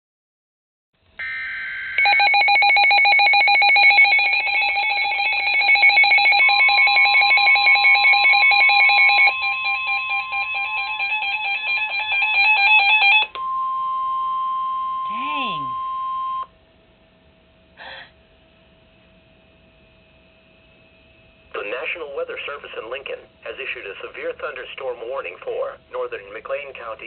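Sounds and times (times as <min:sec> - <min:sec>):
rapidly pulsing electronic alarm: 0:01.2 - 0:13.3
steady single-pitch alarm tone: 0:01.2 - 0:16.6.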